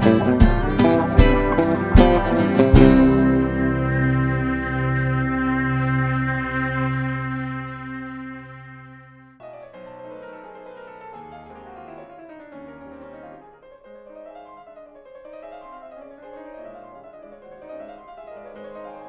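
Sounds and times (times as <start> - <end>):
piano-like keyboard runs: 0.0 - 9.2
steady bass line: 0.0 - 9.3.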